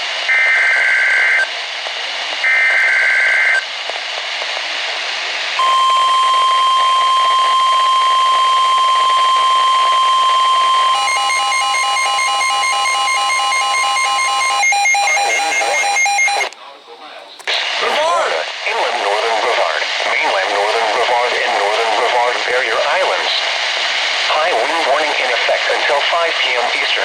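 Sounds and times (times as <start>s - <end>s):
radio hiss: 1.1s - 27.0s
rapidly pulsing beep: 5.6s - 16.5s
steady alarm tone: 5.6s - 16.5s
warbling data bursts: 11.0s - 16.5s.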